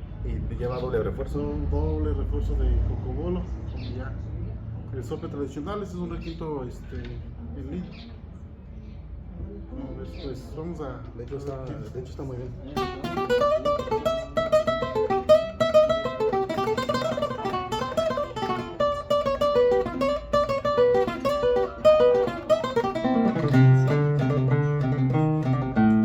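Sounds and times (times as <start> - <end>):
small guitar played solo: 12.8 - 26.0.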